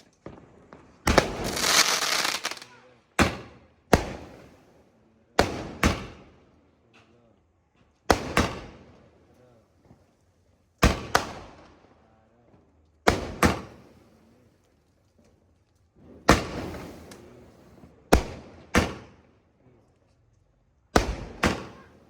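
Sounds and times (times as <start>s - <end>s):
firework bangs with echo: 0.2s - 4.6s, 5.4s - 6.4s, 8.1s - 9.0s, 10.8s - 11.7s, 13.1s - 14.1s, 16.1s - 19.2s, 21.0s - 22.0s.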